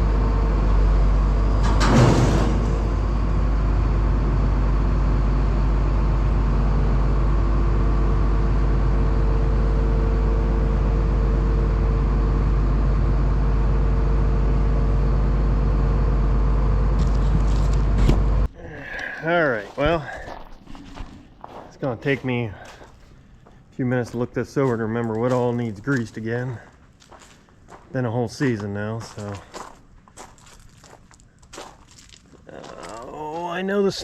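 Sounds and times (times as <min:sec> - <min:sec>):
combine engine running: 0:00.0 - 0:20.1.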